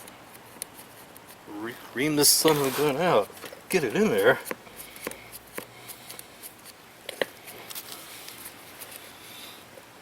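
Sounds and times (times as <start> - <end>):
tool scraping in tire: 2.0 - 4.4.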